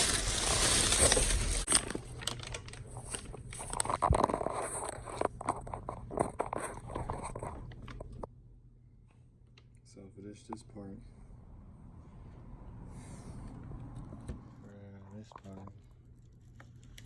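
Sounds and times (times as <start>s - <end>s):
packaging crinkling and rustling: 0.0s - 8.2s
small crackles and clicks: 1.4s - 8.3s.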